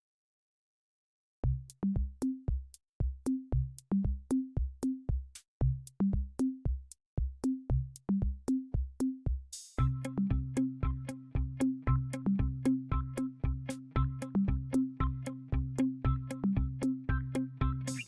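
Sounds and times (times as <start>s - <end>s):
electronic music with drum beat: 1.9s - 18.0s.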